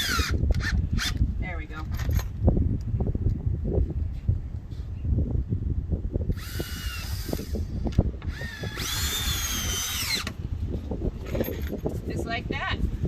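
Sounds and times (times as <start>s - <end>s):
power drill driving screws: 0.0s - 1.2s, 6.4s - 10.3s.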